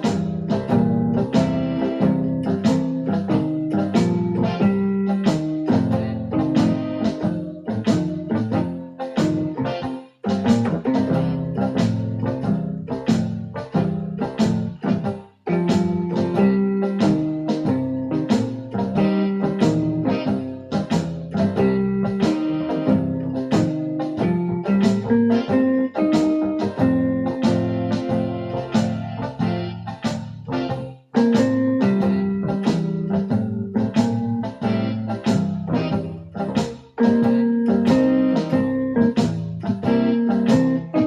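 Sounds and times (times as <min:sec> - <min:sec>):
electronic keyboard playing blues: 0:00.0 - 0:41.0.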